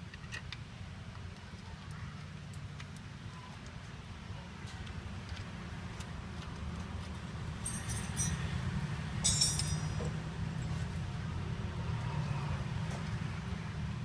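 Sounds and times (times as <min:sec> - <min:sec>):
short metallic clinks: 0:07.6 - 0:08.5, 0:09.2 - 0:10.2.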